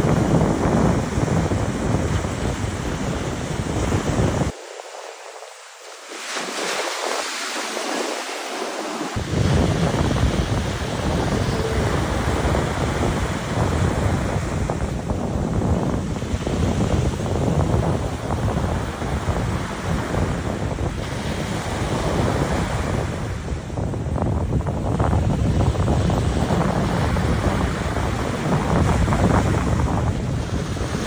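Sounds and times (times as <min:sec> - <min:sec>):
ocean waves washing on shore: 0:00.0 - 0:31.0
wind buffeting microphone: 0:00.0 - 0:31.0.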